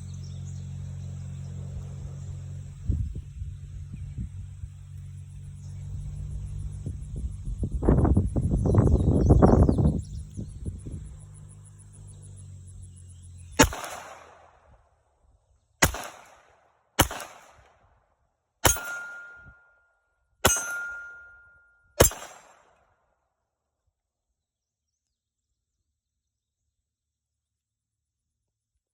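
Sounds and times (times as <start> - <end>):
pistol shots echoing: 13.6 - 14.6, 15.8 - 17.7, 18.6 - 19.7, 20.4 - 22.8
ringing tone: 18.7 - 22.0.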